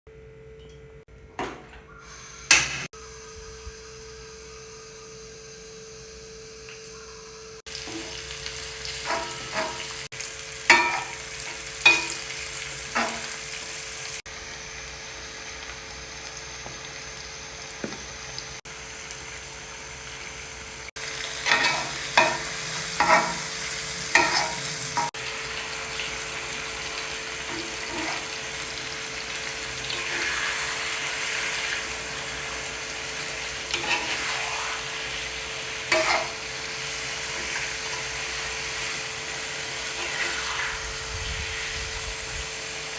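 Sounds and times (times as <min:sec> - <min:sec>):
food sizzling in a pan: 0:02.0 - 0:42.9
utensil clinking and scraping pan: 0:09.0 - 0:10.1, 0:10.7 - 0:12.3, 0:13.0 - 0:13.4, 0:21.4 - 0:25.2, 0:27.5 - 0:28.4, 0:33.7 - 0:34.8, 0:35.9 - 0:36.4.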